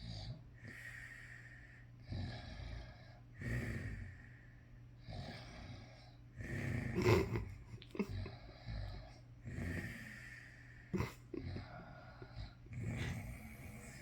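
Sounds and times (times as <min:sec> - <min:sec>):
person snoring: 0:06.4 - 0:14.0.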